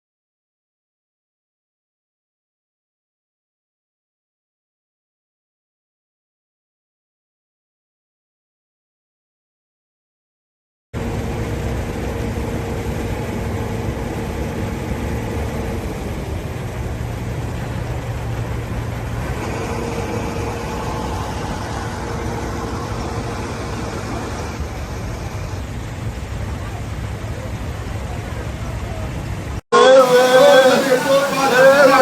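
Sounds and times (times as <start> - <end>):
vehicle engine rumbling: 11.0 - 32.0.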